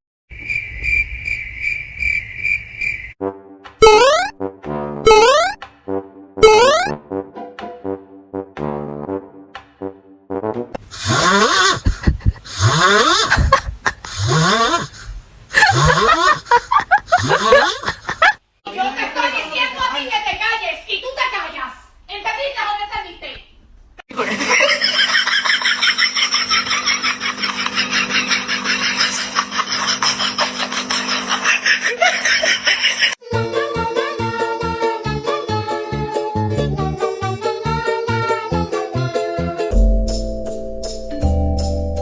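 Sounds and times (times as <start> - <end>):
pet snoring: 11.0 - 11.8, 12.5 - 13.3, 14.2 - 14.9.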